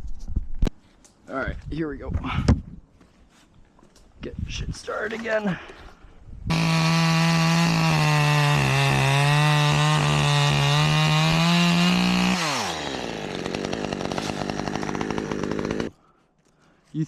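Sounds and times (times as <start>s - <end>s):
chainsaw idling: 6.5s - 15.9s
chainsaw running at high revs: 6.5s - 15.9s.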